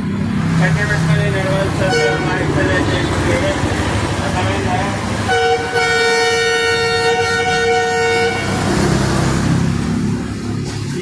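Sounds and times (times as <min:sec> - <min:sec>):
low engine rumble: 0:00.0 - 0:11.0
road traffic noise: 0:00.0 - 0:11.0
vehicle horn long blast: 0:01.8 - 0:03.4, 0:05.3 - 0:08.9.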